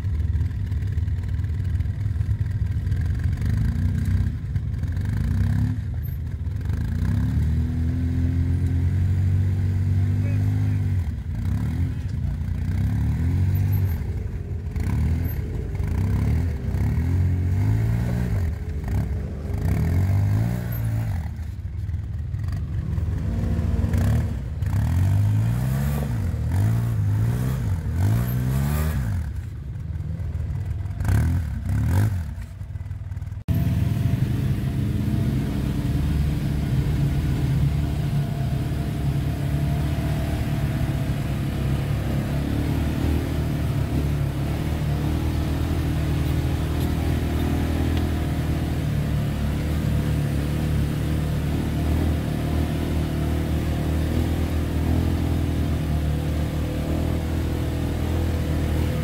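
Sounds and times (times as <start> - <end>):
buggy engine revving: 0.0 - 59.0.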